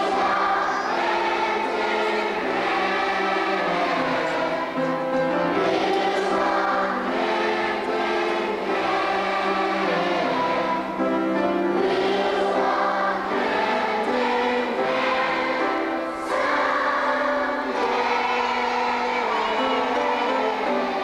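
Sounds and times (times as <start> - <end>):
choir singing in harmony: 0.0 - 21.0.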